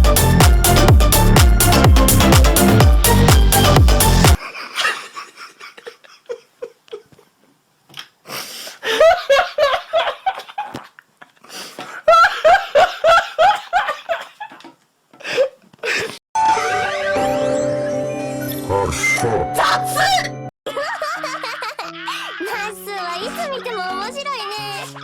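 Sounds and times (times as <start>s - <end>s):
woman laughing: 4.4s - 7.3s, 8.8s - 10.9s, 12.0s - 14.7s, 19.6s - 23.3s.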